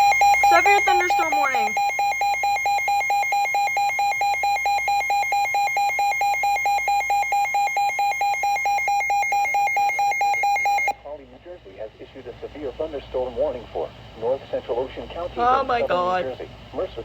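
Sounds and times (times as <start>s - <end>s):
harsh pulsing electronic alert tone: 0.0s - 10.9s.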